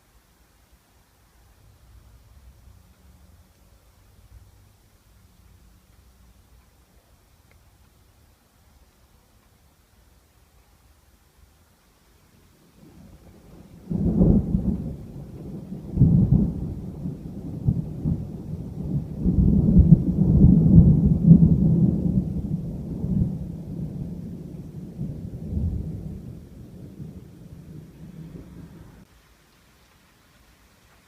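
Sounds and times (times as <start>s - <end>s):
thunder rolling: 12.7s - 29.1s.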